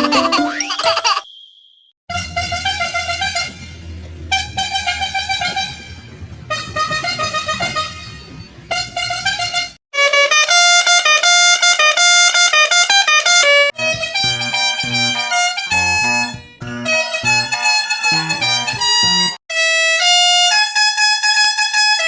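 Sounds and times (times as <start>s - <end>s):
low engine rumble: 2.1s - 9.8s
bus horn blasts: 2.1s - 22.0s.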